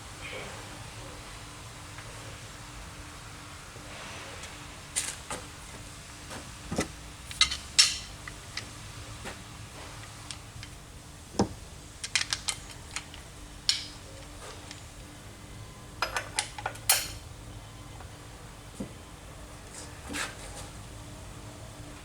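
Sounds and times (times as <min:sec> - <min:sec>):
hand tools clinking on metal: 0:07.3 - 0:10.8, 0:12.0 - 0:14.9, 0:16.0 - 0:17.3.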